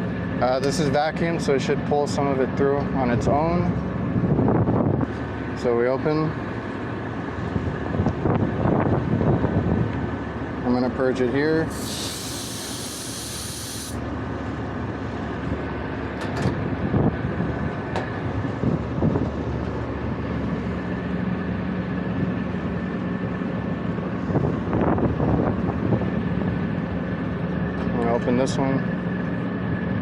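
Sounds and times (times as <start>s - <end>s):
machinery humming: 11.7s - 14.1s.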